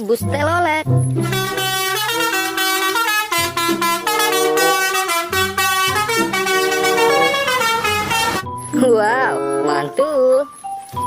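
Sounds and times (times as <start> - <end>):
multi-tone bus horn tune: 1.2 - 8.6, 9.2 - 10.0.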